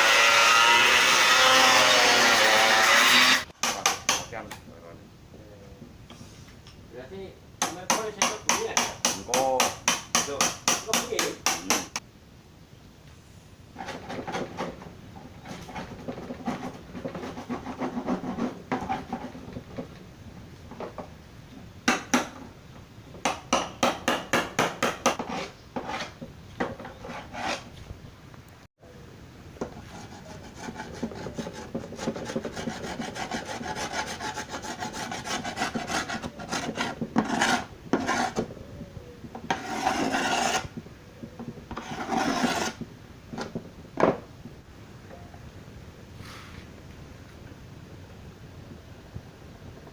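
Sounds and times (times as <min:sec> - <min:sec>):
wood being scraped by hand: 0:13.8 - 0:19.9, 0:24.7 - 0:27.7, 0:29.6 - 0:38.5, 0:39.4 - 0:40.7, 0:41.7 - 0:42.8.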